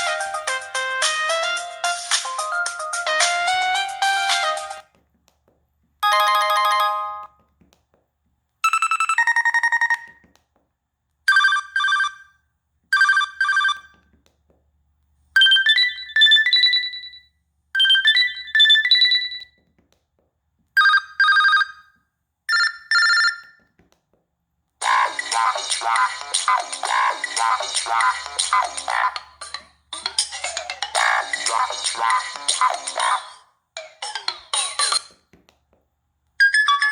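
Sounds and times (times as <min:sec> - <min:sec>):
musical ringtone: 0:00.0 - 0:04.8, 0:06.0 - 0:07.4, 0:15.4 - 0:17.2, 0:17.8 - 0:19.5, 0:24.8 - 0:35.1, 0:36.4 - 0:36.9
electronic ringtone chimes: 0:06.0 - 0:07.3, 0:08.6 - 0:10.2, 0:15.4 - 0:17.2, 0:17.8 - 0:19.5, 0:36.4 - 0:36.9.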